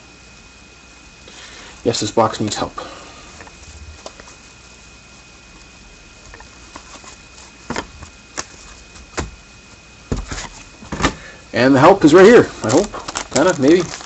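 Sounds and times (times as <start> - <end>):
cards tapping and rustling: 6.3 - 9.4, 10.1 - 11.2, 12.6 - 14.0.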